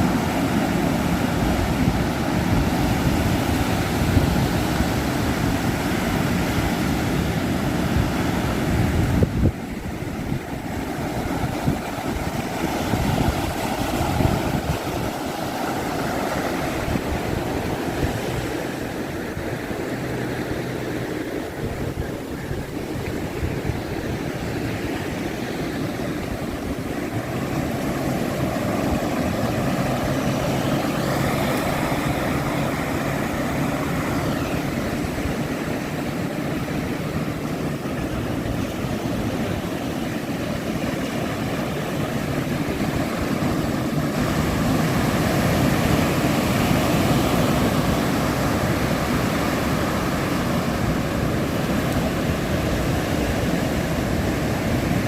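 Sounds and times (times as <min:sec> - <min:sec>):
outboard engines droning: 0:00.0 - 0:55.0.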